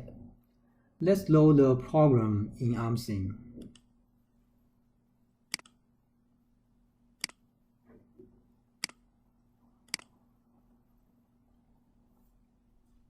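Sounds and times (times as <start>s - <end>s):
faint steady hum: 0.0s - 13.0s
computer mouse clicks: 5.5s - 5.8s, 7.2s - 7.4s, 8.8s - 9.1s, 9.8s - 10.2s.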